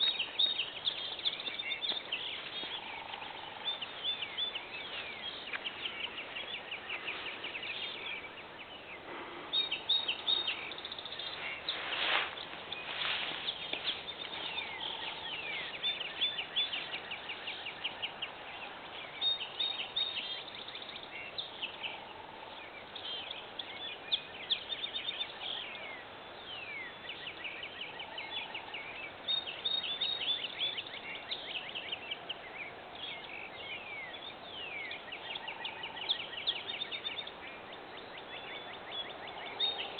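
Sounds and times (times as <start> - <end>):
birds chirping and singing: 0.0 - 39.9.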